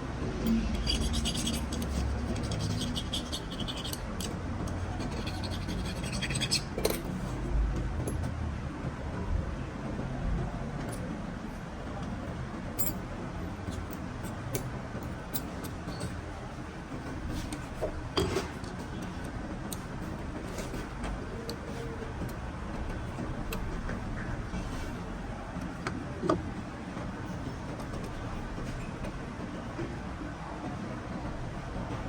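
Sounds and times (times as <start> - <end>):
small metal parts clicking: 0.5 - 7.1
scratching and scraping: 0.5 - 7.4.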